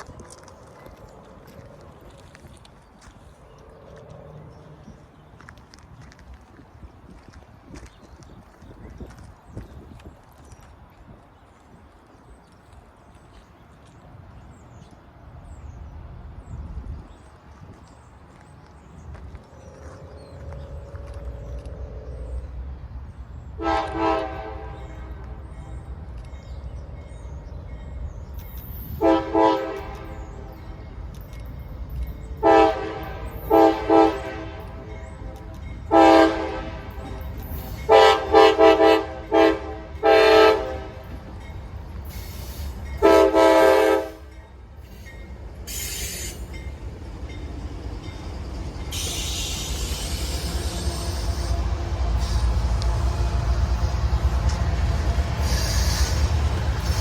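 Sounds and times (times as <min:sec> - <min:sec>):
low train rumble: 0:00.0 - 0:57.0
locomotive air horn blasts: 0:23.6 - 0:25.4, 0:28.9 - 0:30.5, 0:32.4 - 0:37.2, 0:37.8 - 0:41.2, 0:43.0 - 0:44.3, 0:49.0 - 0:53.5.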